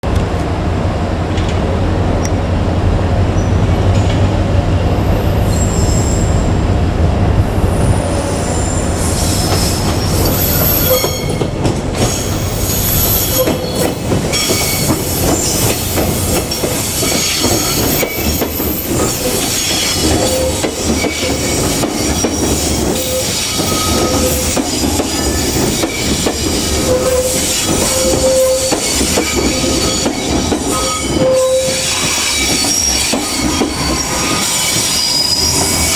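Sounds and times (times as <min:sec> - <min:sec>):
train rumbling past: 0:00.0 - 0:35.9
high thin wheel squeal: 0:07.8 - 0:35.9.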